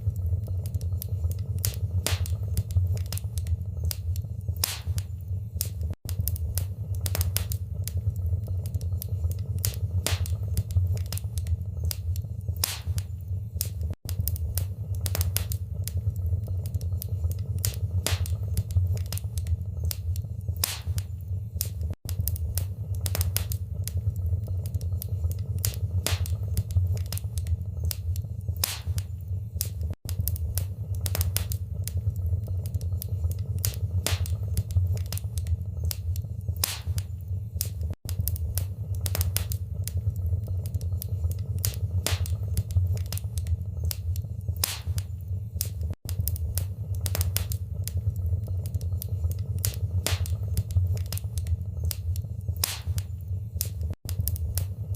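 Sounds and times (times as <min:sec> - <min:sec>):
wood fire crackling: 0:00.0 - 0:54.9.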